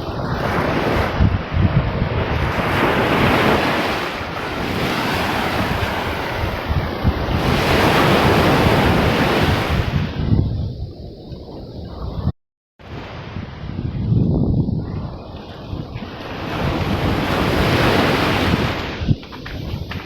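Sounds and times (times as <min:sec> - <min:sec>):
surf washing onto beach: 0:00.0 - 0:10.3, 0:15.2 - 0:20.0
wind rumbling on microphone: 0:00.0 - 0:20.0.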